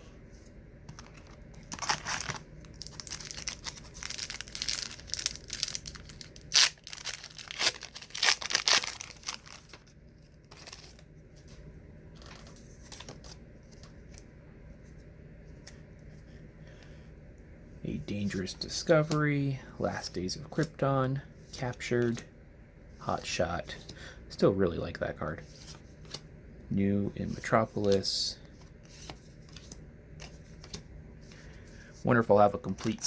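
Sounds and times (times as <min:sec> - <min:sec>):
wrapper tearing and crinkling: 0:01.7 - 0:11.0.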